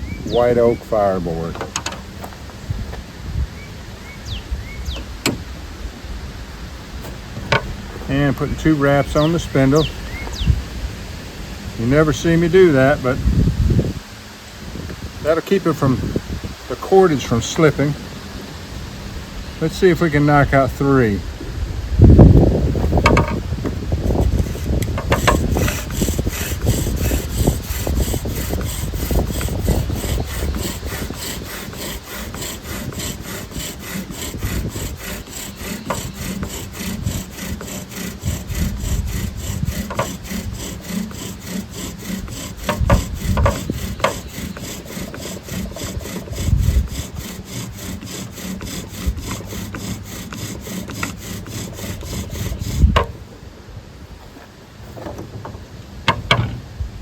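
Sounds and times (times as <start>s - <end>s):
wooden knocks: 1.5s - 3.0s, 7.0s - 8.1s, 23.0s - 23.8s, 24.4s - 33.1s, 42.4s - 46.2s, 54.9s - 56.6s
bow drill spindle grinding: 7.0s - 10.4s, 15.3s - 18.0s, 22.8s - 53.2s.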